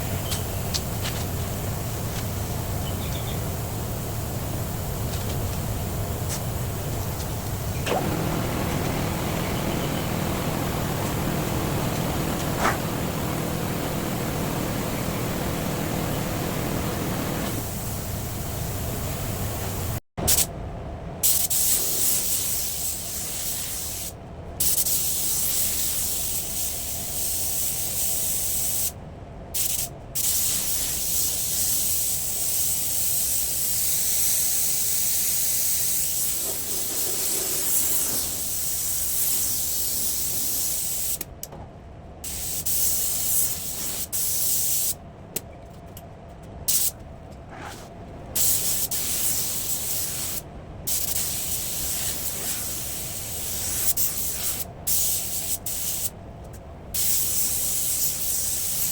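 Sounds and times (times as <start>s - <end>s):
spray gun hissing: 0.0s - 20.4s, 29.6s - 41.2s, 42.3s - 45.0s, 48.4s - 56.1s, 57.0s - 58.9s.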